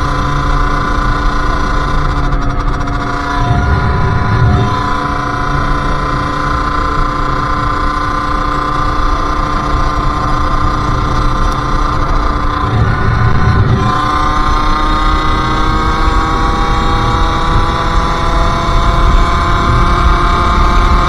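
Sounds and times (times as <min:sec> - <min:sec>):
two-stroke motorcycle engine running: 0:00.0 - 0:21.0.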